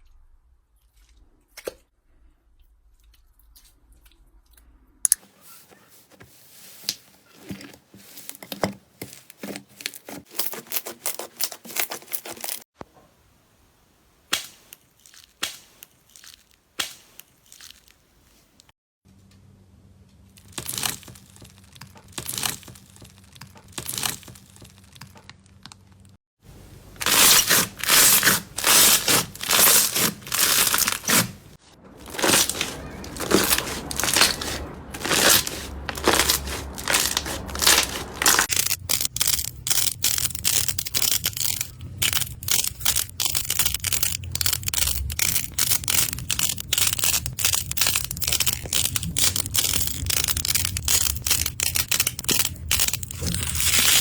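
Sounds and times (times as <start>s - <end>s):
slime squishing and crackling: 14.3s - 18.1s, 27.0s - 54.0s.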